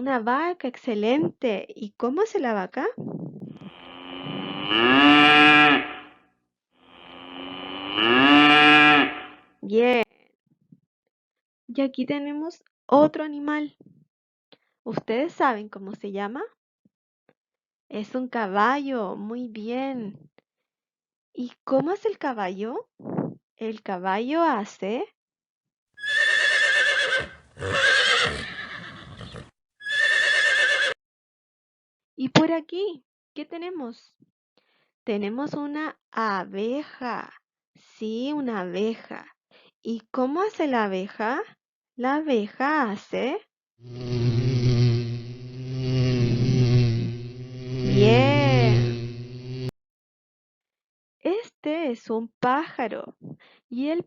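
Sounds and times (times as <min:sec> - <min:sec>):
cow mooing: 0:03.6 - 0:06.1, 0:06.9 - 0:09.4, 0:43.9 - 0:49.7
horse whinnying: 0:04.0 - 0:06.1, 0:07.3 - 0:09.4, 0:26.0 - 0:31.0.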